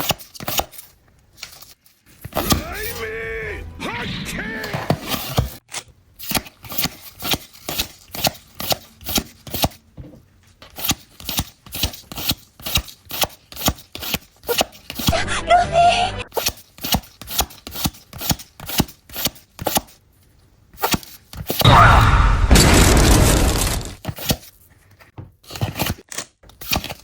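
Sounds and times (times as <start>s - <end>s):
brief dense sound: 2.4s - 5.2s.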